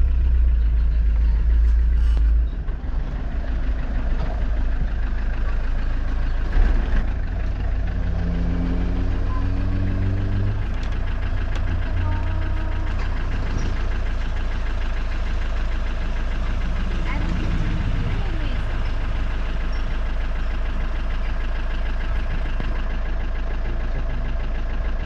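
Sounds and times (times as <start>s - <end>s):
pitched hum: 0.0s - 19.9s
engine and road rumble: 0.0s - 25.0s.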